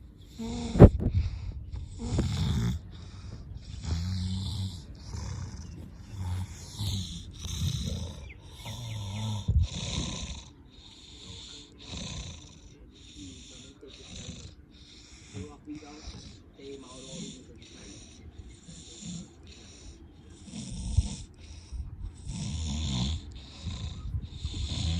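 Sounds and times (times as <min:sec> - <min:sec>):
person snoring: 0:01.8 - 0:24.9.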